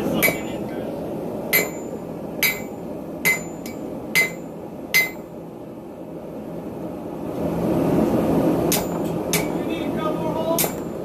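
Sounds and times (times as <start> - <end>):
hammer ringing on anvil: 0.2 - 0.6, 1.6 - 5.2.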